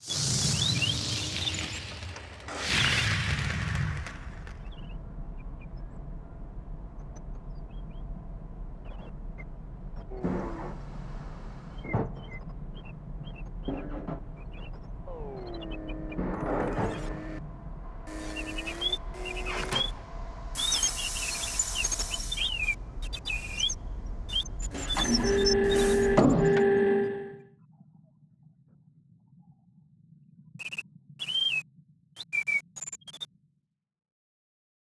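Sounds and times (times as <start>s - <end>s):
hiss: 0.0s - 4.8s, 18.1s - 26.2s
loud steady pitched hum: 14.7s - 27.4s
birds chirping: 18.1s - 20.0s, 20.6s - 25.8s.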